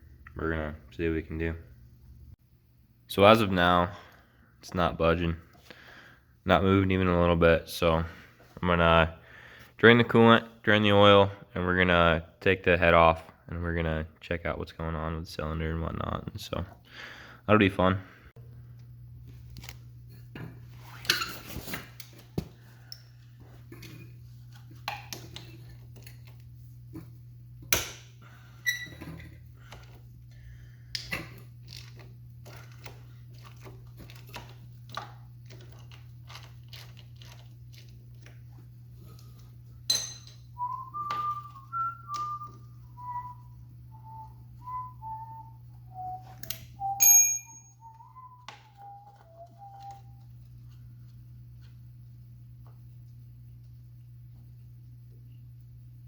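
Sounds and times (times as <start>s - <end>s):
steady low hum: 0.0s - 56.0s
man whistling a tune: 40.6s - 50.2s.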